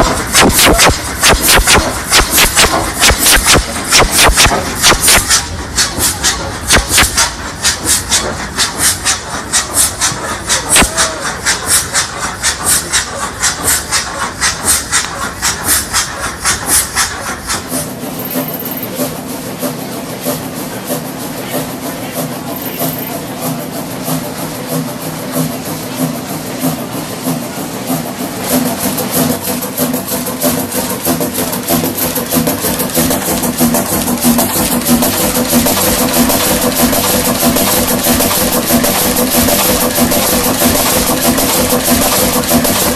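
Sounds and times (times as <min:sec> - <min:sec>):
sharp knock: 0:00.0 - 0:05.3
large engine running: 0:00.0 - 0:42.9
rhythmic hissing puff: 0:00.0 - 0:42.9.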